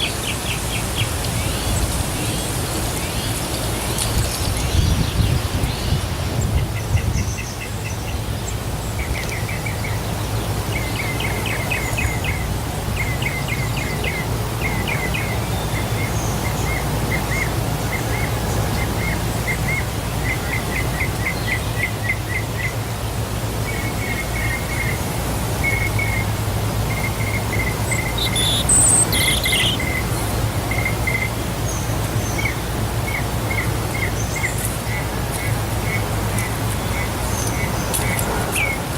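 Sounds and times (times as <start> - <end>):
waterfall rushing: 0.0 - 38.9
small bird chirping: 27.0 - 38.8.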